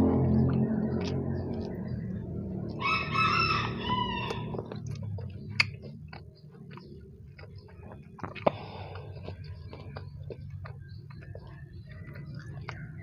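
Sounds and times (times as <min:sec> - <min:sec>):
chewing and eating mouth noises: 0:00.0 - 0:13.0
rooster crowing: 0:02.8 - 0:04.8.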